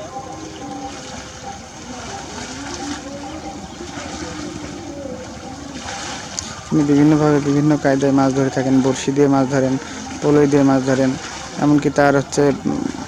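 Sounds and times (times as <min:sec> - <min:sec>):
distant voices calling: 0:00.0 - 0:13.0
steady outdoor rumbling: 0:00.0 - 0:13.0.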